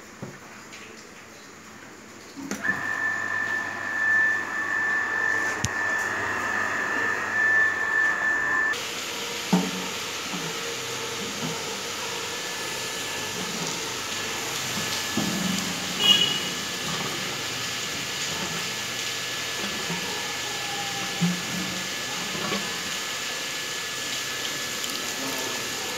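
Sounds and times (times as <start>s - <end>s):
high whine: 2.5s - 25.9s
rushing water: 8.8s - 25.9s.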